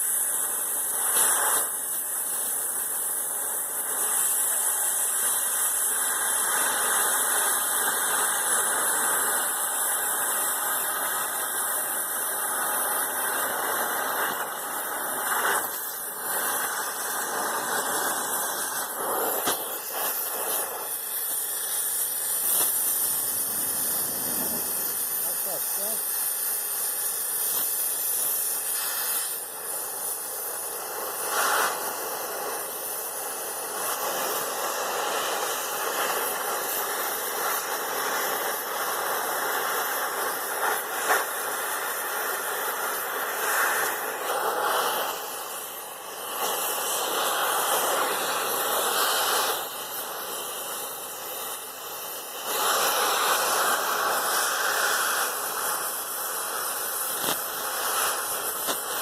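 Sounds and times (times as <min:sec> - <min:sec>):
cutting torch hissing: 0:00.0 - 0:59.0.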